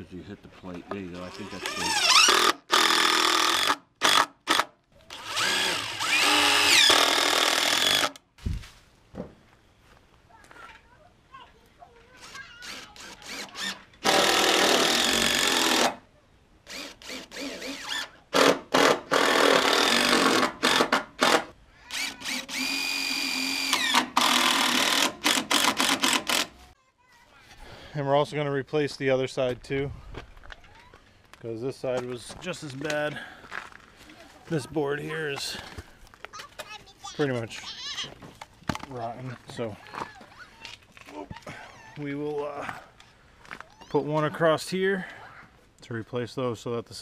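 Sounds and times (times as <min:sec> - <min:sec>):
power drill running: 0:01.4 - 0:08.2, 0:12.2 - 0:16.0, 0:16.7 - 0:26.6
power drill motor whine: 0:05.1 - 0:08.2, 0:21.9 - 0:25.4.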